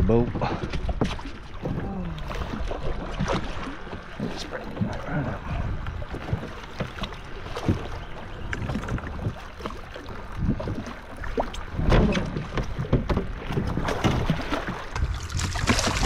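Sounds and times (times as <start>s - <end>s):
boat engine low rumble: 0.0s - 16.0s
knocks and thuds: 11.8s - 14.4s.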